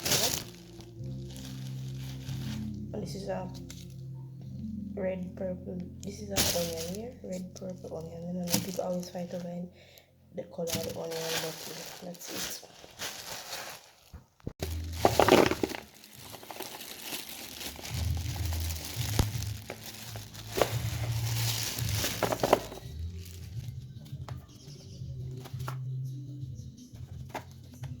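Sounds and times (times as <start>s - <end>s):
plastic bag crinkling: 0.0s - 2.9s, 6.4s - 9.6s, 10.6s - 23.9s
background music with bass: 0.0s - 11.1s, 14.6s - 28.0s.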